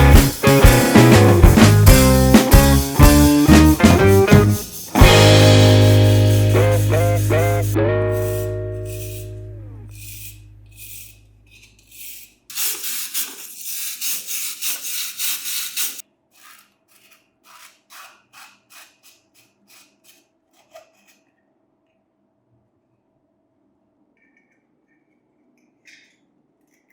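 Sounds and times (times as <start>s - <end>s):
hand rubbing strokes: 0.0s - 16.6s.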